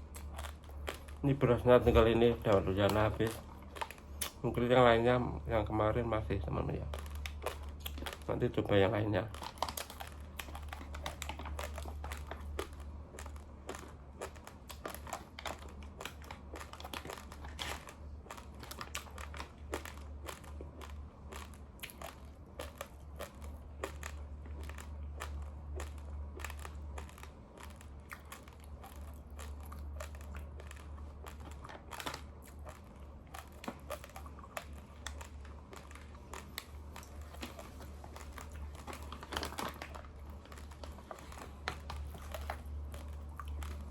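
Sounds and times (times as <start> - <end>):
person chewing raw rice: 0.0 - 43.9
steady low hum: 0.0 - 43.9.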